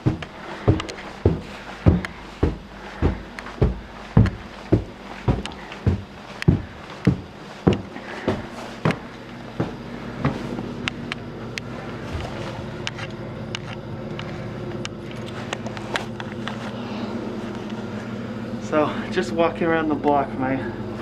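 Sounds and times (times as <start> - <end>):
footsteps crunching through snow: 0.0 - 10.6
low mechanical hum: 0.0 - 21.0.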